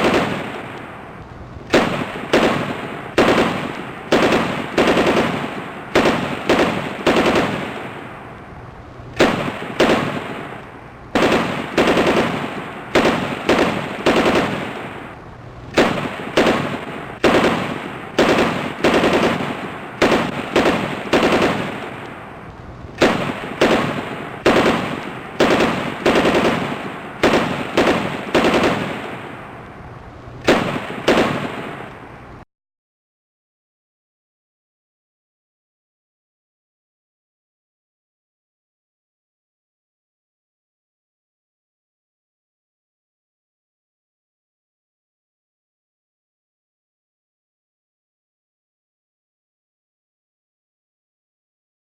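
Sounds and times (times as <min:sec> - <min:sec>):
machine gun bursts with echo: 0:00.0 - 0:01.1, 0:01.7 - 0:08.2, 0:09.2 - 0:29.5, 0:30.4 - 0:31.9.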